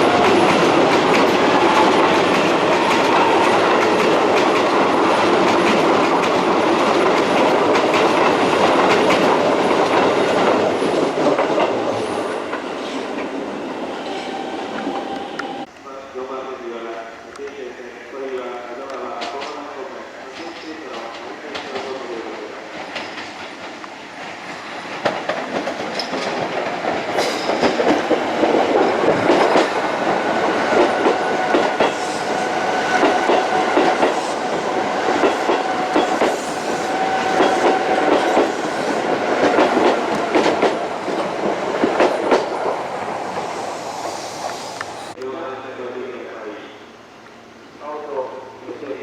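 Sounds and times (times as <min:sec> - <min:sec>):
train wheels clacking on rails: 0:00.0 - 0:15.7, 0:20.3 - 0:45.2.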